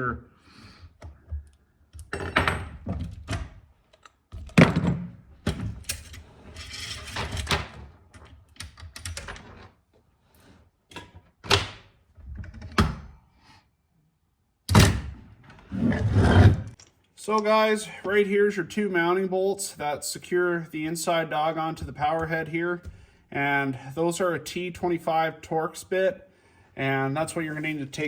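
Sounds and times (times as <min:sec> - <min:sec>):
tools clattering on a workbench: 0:02.0 - 0:03.3, 0:03.9 - 0:08.4.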